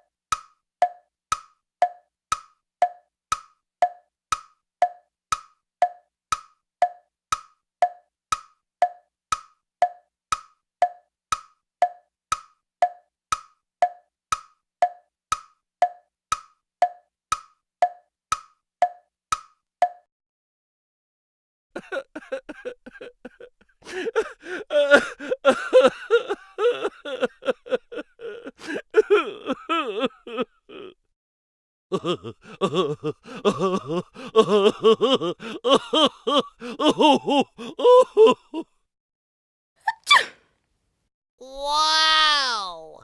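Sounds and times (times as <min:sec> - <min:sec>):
person making rapid chattering sounds: 0:21.8 - 0:31.0, 0:31.9 - 0:38.6.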